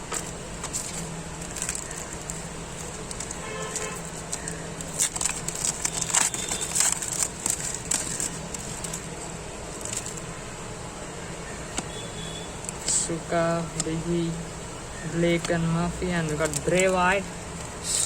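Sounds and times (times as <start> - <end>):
foil packet crinkling: 0.0 - 10.4, 15.0 - 18.0
cards rustling: 0.0 - 10.5, 12.6 - 18.0
steady low hum: 0.0 - 18.0.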